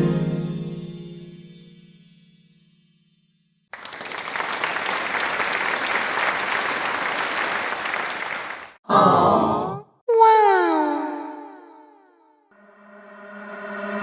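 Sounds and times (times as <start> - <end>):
crowd applause: 3.7 - 8.8.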